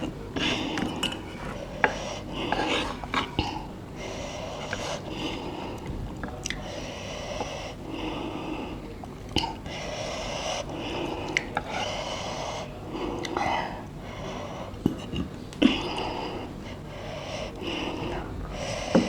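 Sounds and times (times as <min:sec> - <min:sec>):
person breathing hard and sniffling: 0:00.0 - 0:08.9, 0:15.6 - 0:19.0.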